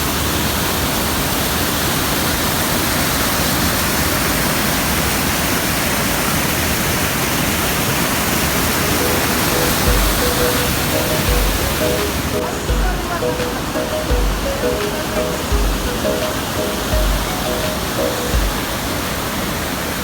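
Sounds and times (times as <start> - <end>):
waterfall roaring: 0.0 - 20.0
faint music: 8.4 - 19.5.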